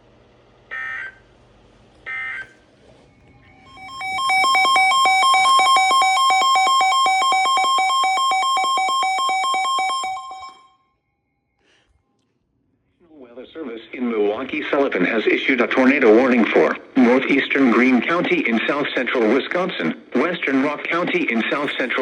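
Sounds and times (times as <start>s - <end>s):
warbling electronic alert tone: 3.5s - 10.7s.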